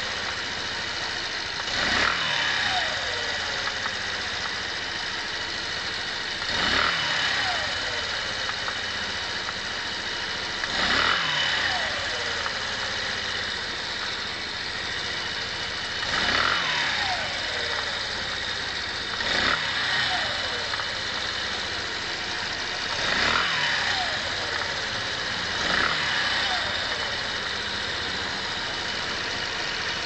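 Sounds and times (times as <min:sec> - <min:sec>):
motorcycle engine idling and revving: 0:00.0 - 0:30.0.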